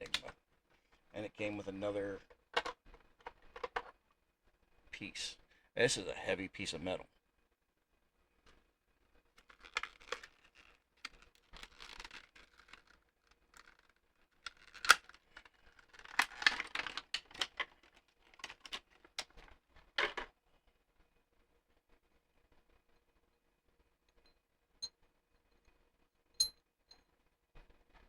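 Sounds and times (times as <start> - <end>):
wrapping crinkling and tearing: 9.4 - 19.5.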